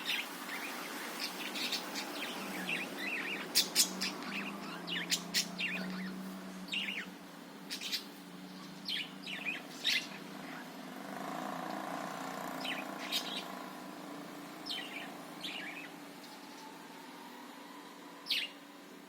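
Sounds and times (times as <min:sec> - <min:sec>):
budgerigar chirping: 0:01.5 - 0:07.1.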